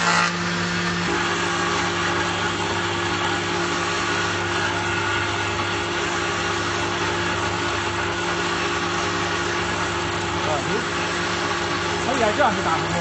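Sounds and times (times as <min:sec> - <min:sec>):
woodworking planer running: 0:00.0 - 0:13.0.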